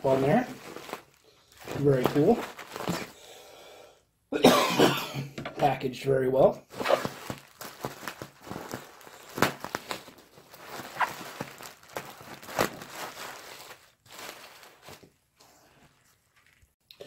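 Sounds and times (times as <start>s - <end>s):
bubble wrap crinkling: 0.0s - 3.2s, 6.6s - 16.8s.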